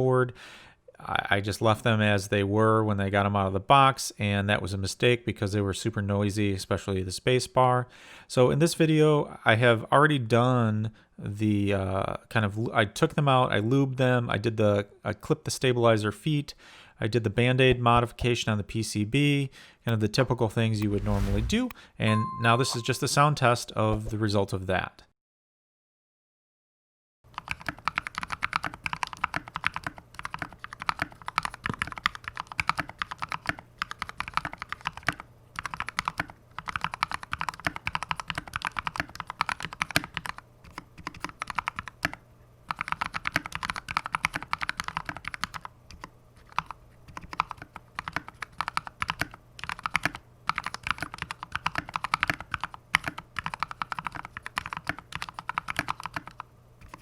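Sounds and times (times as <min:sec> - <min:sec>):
mechanical keyboard typing: 0:27.3 - 0:57.0.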